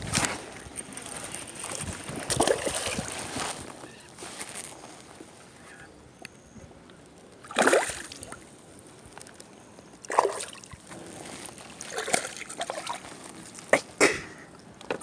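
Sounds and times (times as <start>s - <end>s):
fish splashing in water: 1.5s - 3.1s, 7.4s - 8.4s, 10.1s - 10.8s.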